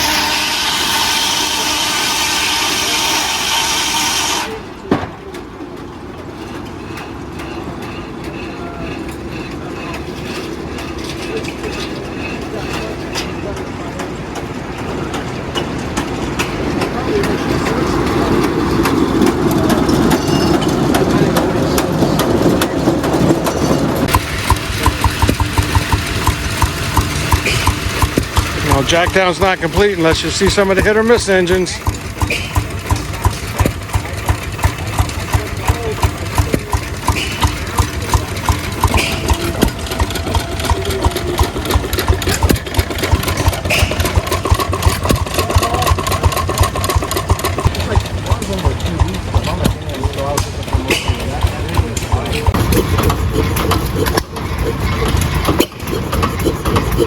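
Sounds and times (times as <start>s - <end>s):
heavy engine running under load: 0.0s - 57.0s
small stationary engine exhaust beats: 24.0s - 57.0s.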